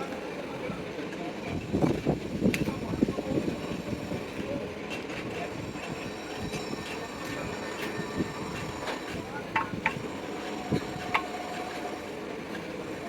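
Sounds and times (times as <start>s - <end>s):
machinery running: 1.6s - 13.0s.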